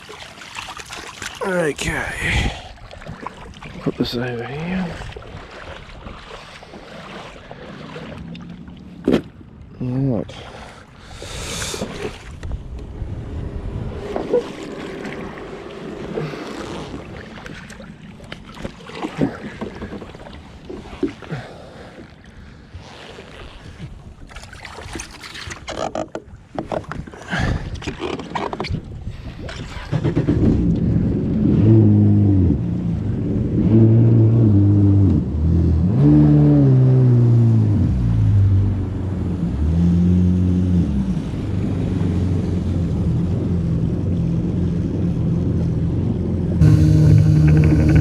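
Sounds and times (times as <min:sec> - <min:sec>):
jet ski engine revving: 0:31.4 - 0:48.0.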